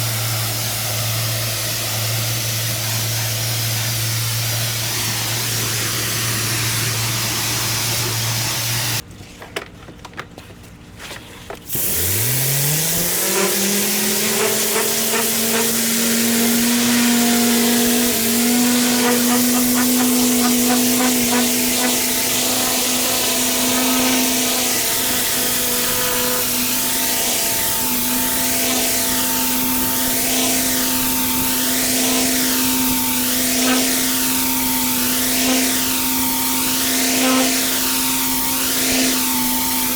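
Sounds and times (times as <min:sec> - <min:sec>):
high-pressure water spraying: 0:00.0 - 0:09.0, 0:11.7 - 0:39.9
machine whining: 0:11.8 - 0:39.9.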